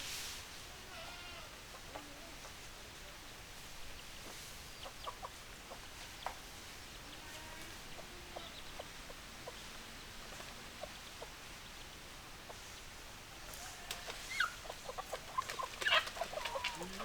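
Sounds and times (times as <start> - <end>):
steady background hiss: 0.0 - 17.0
hens clucking: 13.5 - 17.0.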